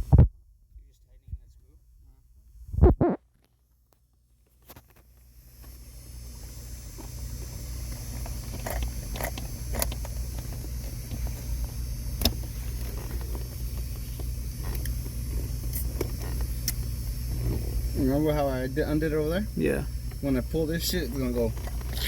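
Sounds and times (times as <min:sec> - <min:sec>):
car engine idling: 0:05.6 - 0:22.0.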